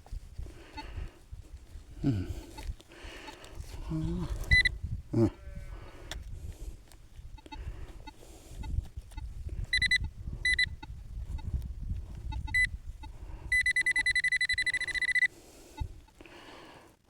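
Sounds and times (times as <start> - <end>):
handling and wind rumble: 0.0 - 15.0
metal detector pinpointer beeping: 4.4 - 4.8, 7.3 - 16.2.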